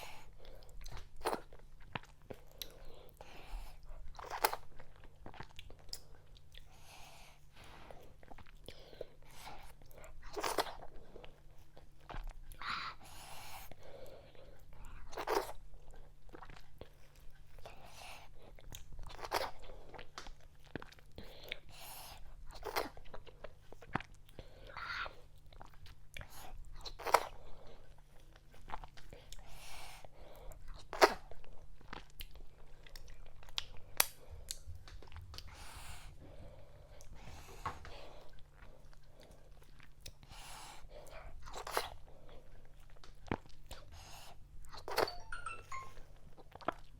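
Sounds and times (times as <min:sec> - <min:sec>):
person chewing food: 0:00.0 - 0:46.9.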